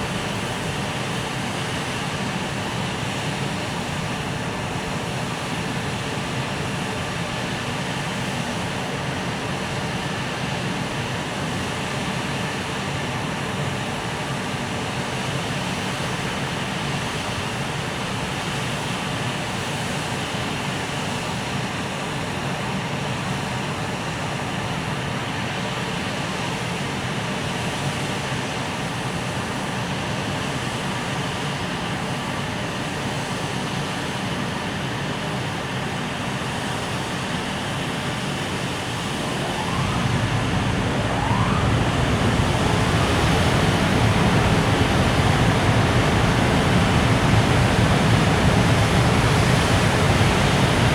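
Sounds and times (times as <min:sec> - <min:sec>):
freight train drone: 0:38.0 - 0:50.9.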